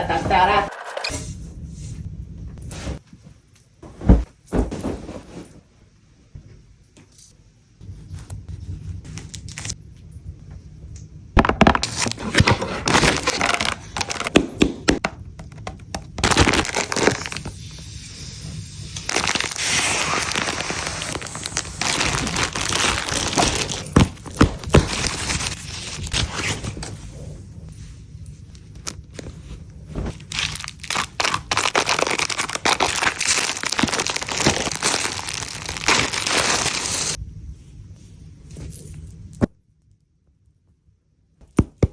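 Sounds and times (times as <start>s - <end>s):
packaging crinkling: 11.7s - 14.4s, 16.2s - 17.5s, 19.0s - 26.4s, 30.1s - 37.2s.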